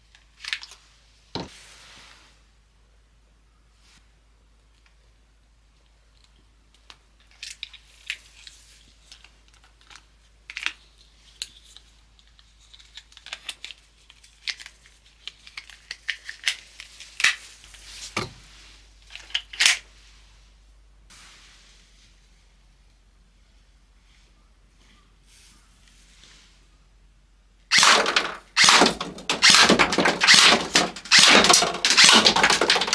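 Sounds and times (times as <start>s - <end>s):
scraping or rustling: 27.7s - 32.9s.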